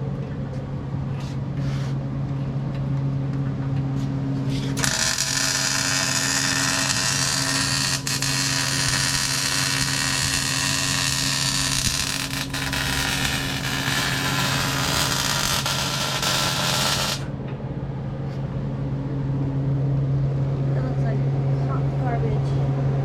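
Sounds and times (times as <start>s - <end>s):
steady low hum: 0.0s - 23.0s
welder crackling hiss: 4.8s - 17.3s.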